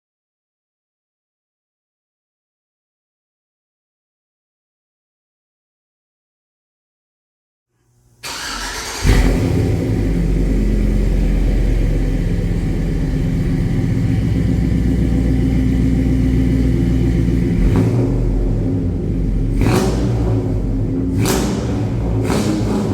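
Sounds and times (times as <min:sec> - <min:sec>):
engine idling loudly: 0:08.5 - 0:22.9.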